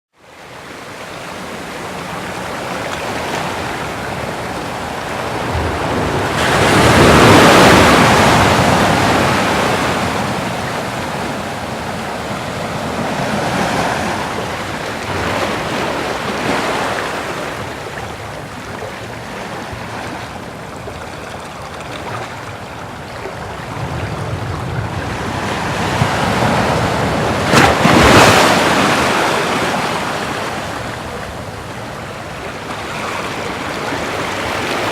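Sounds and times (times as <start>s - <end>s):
ocean waves breaking: 0.2s - 34.9s.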